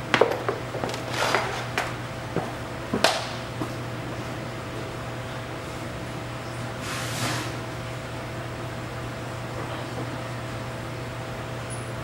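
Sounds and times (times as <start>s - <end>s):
knocks and clicks of handling: 0.0s - 2.0s.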